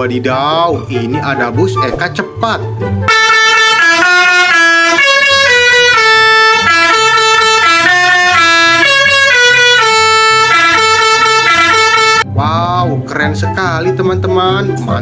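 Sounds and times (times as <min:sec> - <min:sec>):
multi-tone musical bus horn: 0:03.1 - 0:12.3.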